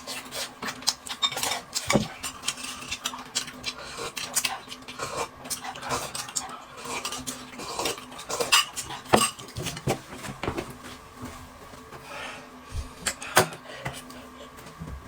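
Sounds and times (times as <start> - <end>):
dishes and cutlery clinking: 7.0 - 10.0.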